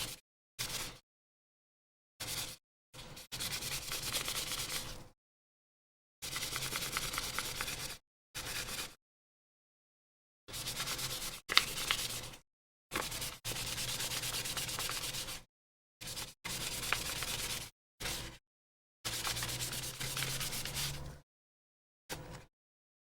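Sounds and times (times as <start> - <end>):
sandpaper rubbing on plastic: 0.1 - 1.0, 2.2 - 2.6, 3.2 - 5.0, 6.3 - 9.0, 10.5 - 18.3, 19.1 - 21.1.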